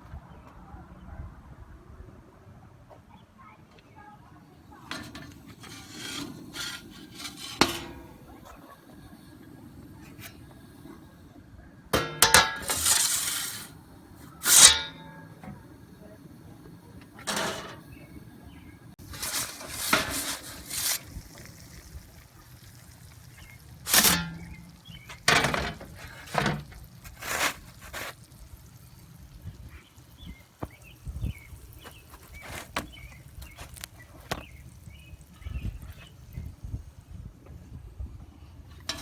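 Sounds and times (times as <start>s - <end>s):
wind buffeting microphone: 28.4s - 33.8s, 34.5s - 38.4s.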